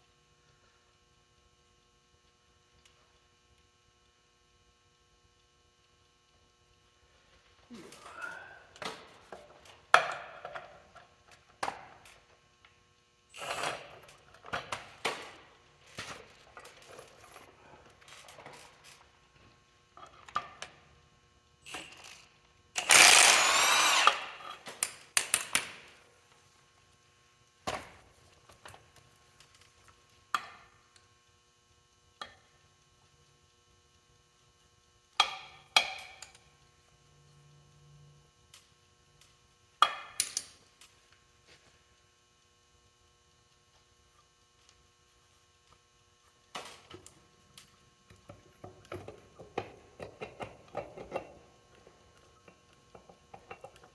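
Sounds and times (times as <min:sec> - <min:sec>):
faint steady hum: 0:00.0 - 0:53.9
power tool burst: 0:22.8 - 0:24.4.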